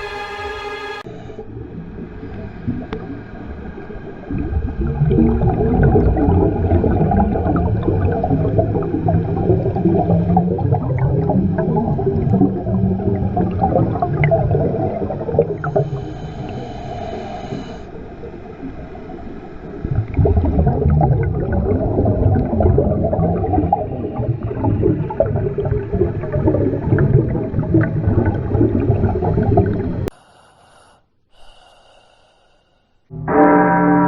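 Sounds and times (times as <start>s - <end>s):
rumbling underwater ambience: 1.0s - 30.1s
gurgling and breath-like noises: 13.7s - 18.0s, 20.0s - 33.1s.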